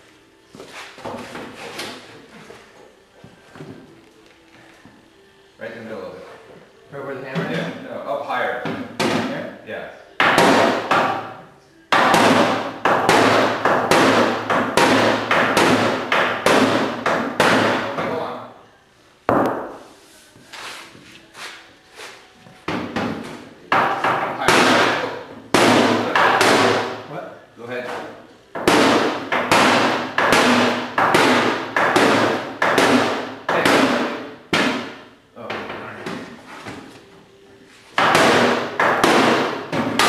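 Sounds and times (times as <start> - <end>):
hammer pounding on sheet metal: 8.6 - 9.5, 10.2 - 18.3, 22.7 - 27.1, 28.0 - 36.3, 38.0 - 40.0.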